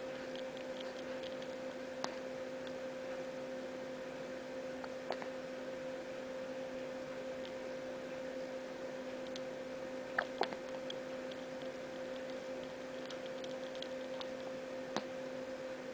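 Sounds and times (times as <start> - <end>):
steady hum: 0.0 - 15.9.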